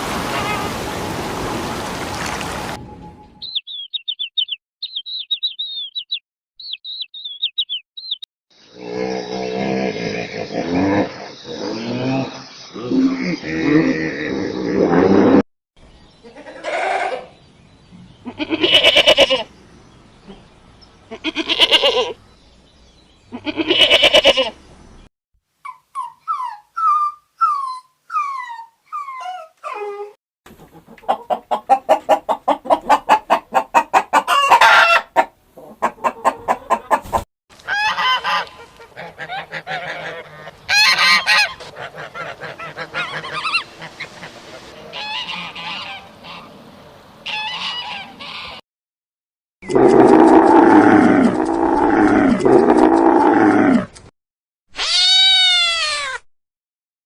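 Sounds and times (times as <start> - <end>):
young birds peeping: 3.4 - 8.3
poultry honking and cackling: 16.2 - 17.4, 18.2 - 19.5, 21.1 - 22.2, 23.3 - 24.6, 30.5 - 46.6, 47.2 - 48.6
goat-like bleats: 16.3 - 17.3, 18.2 - 19.5, 21.1 - 22.2, 23.3 - 24.6, 54.8 - 56.2.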